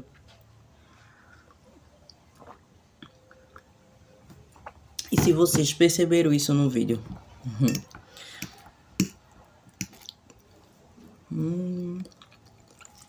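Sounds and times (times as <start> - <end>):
mouth clicks while eating: 7.6 - 9.2
person humming mmm: 11.3 - 12.2.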